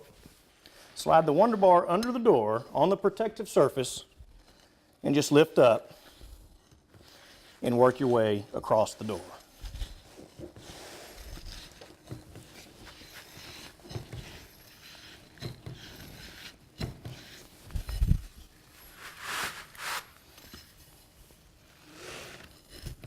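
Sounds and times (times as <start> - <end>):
knocks clicks and scrapes: 9.3 - 18.4.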